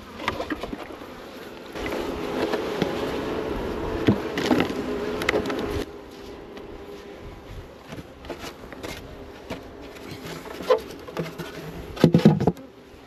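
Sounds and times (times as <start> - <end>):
honey bees buzzing: 0.0 - 13.0
hive handling clicks: 4.0 - 5.8.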